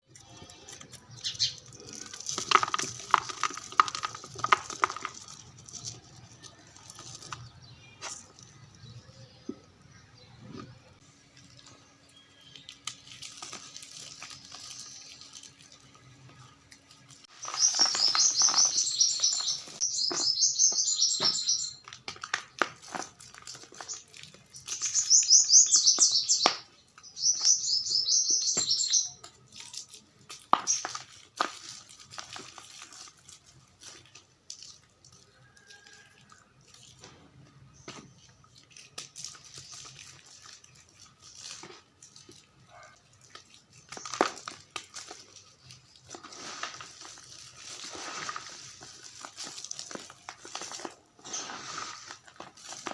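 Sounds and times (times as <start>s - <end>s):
chalk crumbling and crunching: 0.0s - 9.4s, 11.3s - 52.9s.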